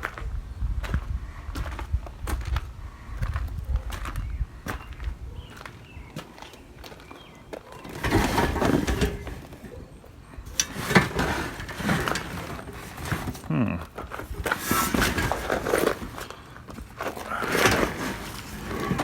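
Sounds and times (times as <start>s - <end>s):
metal junk knocking and clanking: 7.8s - 19.0s.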